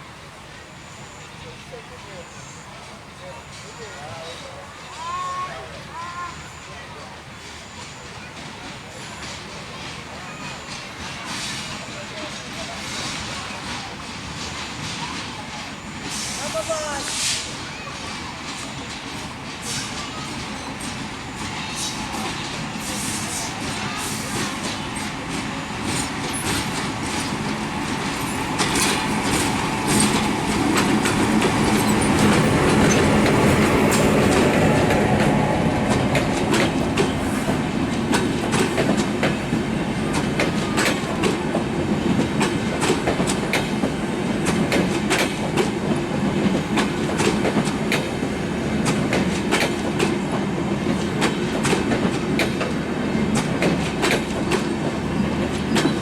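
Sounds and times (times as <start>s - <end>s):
diesel train passing: 0.0s - 56.0s
wheels clicking over rail joints: 17.8s - 56.0s.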